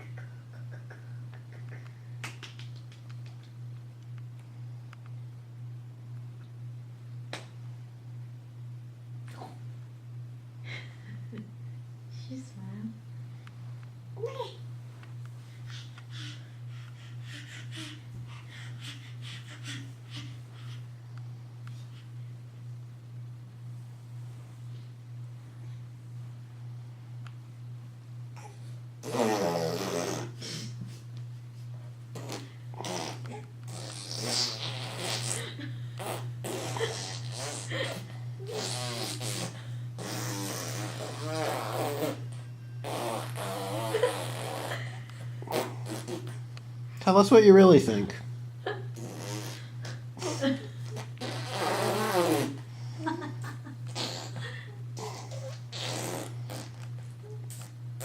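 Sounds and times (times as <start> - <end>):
steady low hum: 0.0 - 58.0
baby vocalizing: 15.7 - 20.8
baby grunts and breathy noises: 55.0 - 55.8.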